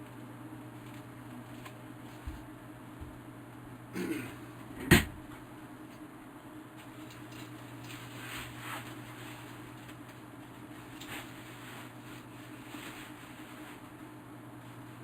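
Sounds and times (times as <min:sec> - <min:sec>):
steady low hum: 0:00.0 - 0:15.0
soft rustling and handling: 0:06.8 - 0:14.9.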